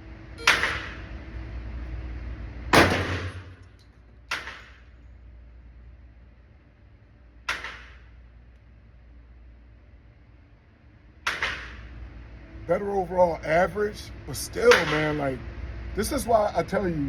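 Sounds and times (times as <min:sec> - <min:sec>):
handgun shots with echo: 0:00.5 - 0:01.1, 0:02.8 - 0:03.6, 0:04.3 - 0:04.8, 0:07.5 - 0:08.0, 0:11.3 - 0:11.8.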